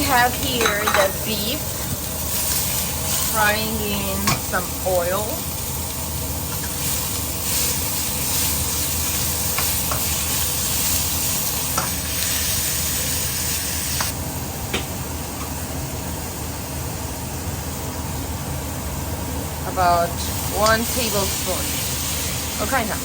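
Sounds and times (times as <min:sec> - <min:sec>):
beef sizzling in hot oil: 0:00.0 - 0:14.5, 0:19.7 - 0:23.0.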